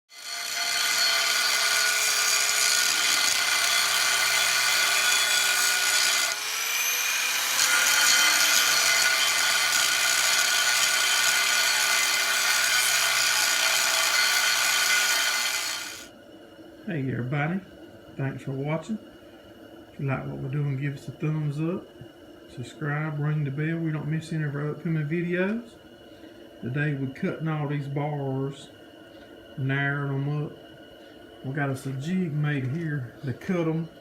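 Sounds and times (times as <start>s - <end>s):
chop saw cutting metal: 0.1s - 16.1s.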